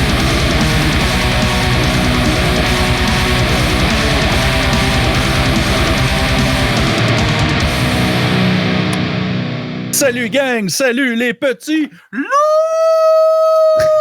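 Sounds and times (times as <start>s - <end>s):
distorted electric guitar: 0.0s - 10.0s
heavy metal music: 0.0s - 10.4s.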